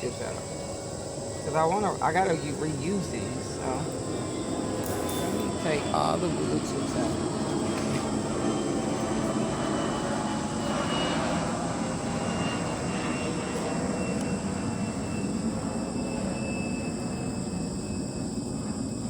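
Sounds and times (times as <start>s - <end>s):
steady mechanical drone: 0.0s - 19.0s.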